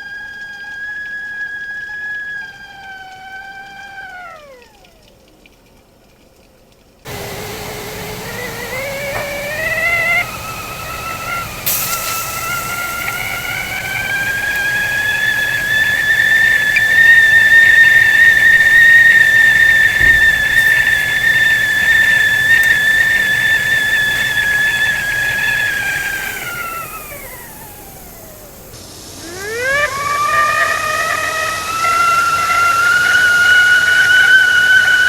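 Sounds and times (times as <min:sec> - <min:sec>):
teakettle whistling: 0:00.0 - 0:05.1, 0:07.1 - 0:35.0
faint steam hiss: 0:07.1 - 0:35.0.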